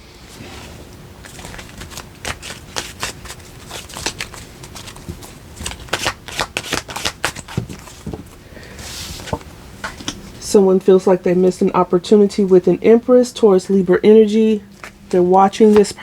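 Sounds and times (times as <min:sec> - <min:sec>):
cards being shuffled: 0:01.2 - 0:08.2.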